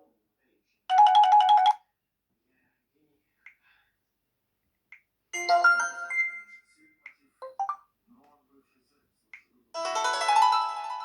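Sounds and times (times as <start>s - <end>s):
chime-like ringtone: 0.9s - 1.8s, 5.4s - 6.7s, 7.4s - 7.8s
electronic ringtone phrase: 0.9s - 1.8s, 5.4s - 6.6s, 7.4s - 7.8s.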